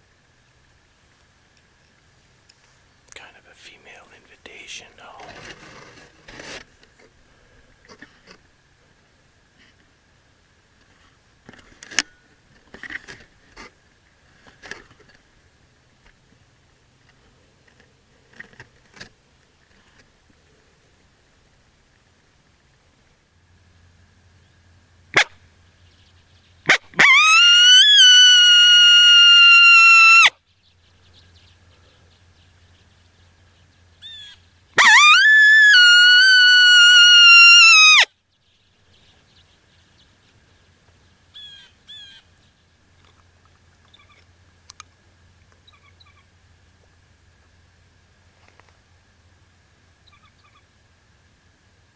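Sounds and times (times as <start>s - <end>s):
coyote howls: 26.7s - 30.4s, 34.0s - 38.1s
coyote yips: 26.7s - 30.4s, 34.0s - 38.1s, 41.4s - 42.2s.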